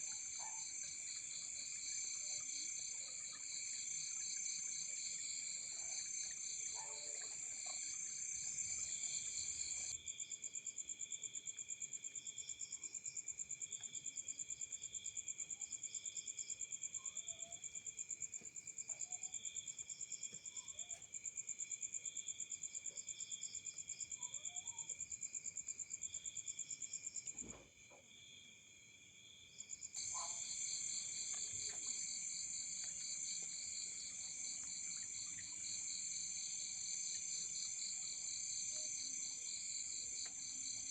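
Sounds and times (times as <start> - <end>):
crickets and insects trilling: 30.0 - 40.9.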